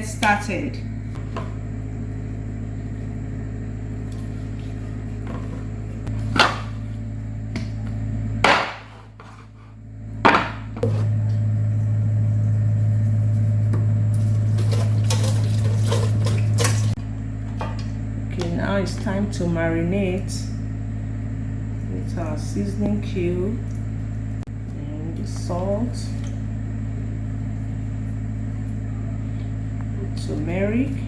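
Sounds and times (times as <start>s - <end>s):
low electrical hum: 0.0s - 31.0s
utensils clattering: 14.2s - 17.0s.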